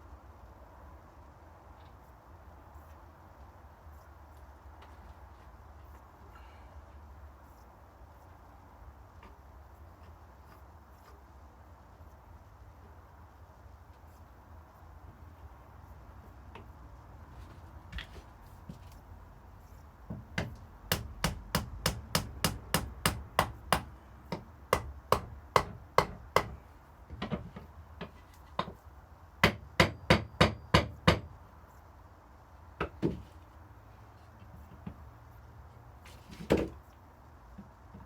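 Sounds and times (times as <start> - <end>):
hammer tapping on wood: 20.1 - 27.4, 29.4 - 31.3.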